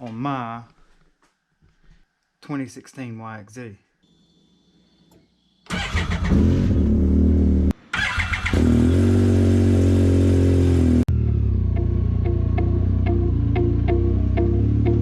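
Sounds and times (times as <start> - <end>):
engine revving: 5.7 - 15.0
music with steady tick: 11.1 - 15.0.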